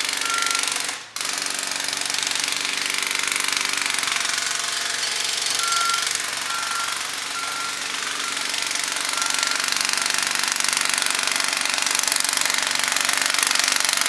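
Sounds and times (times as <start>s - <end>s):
heavy machine engine running: 0.0s - 14.0s
jackhammer hammering: 0.0s - 14.0s
alarm beeping: 0.2s - 0.8s, 4.9s - 10.4s.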